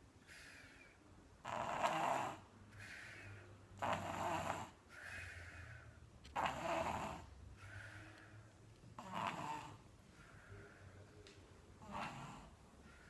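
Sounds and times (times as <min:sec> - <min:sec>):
baby snoring: 0:01.4 - 0:05.5, 0:06.3 - 0:07.9, 0:09.0 - 0:09.8, 0:11.8 - 0:12.6.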